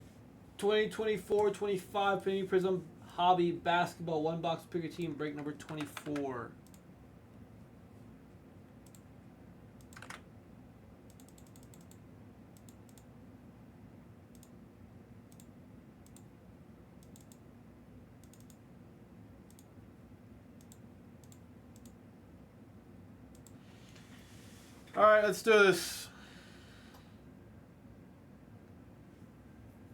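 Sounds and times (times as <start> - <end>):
low room hum: 0.0 - 29.9
typing on computer keyboard: 5.4 - 6.8, 9.8 - 10.3, 11.1 - 12.0, 17.0 - 17.4, 18.2 - 18.6.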